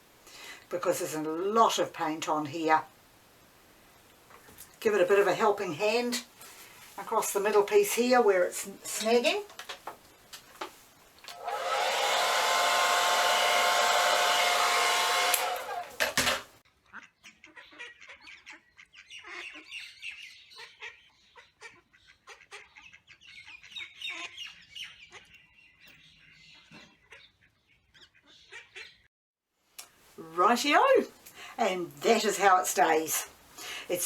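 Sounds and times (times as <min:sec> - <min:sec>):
hair dryer running: 0:11.3 - 0:16.6.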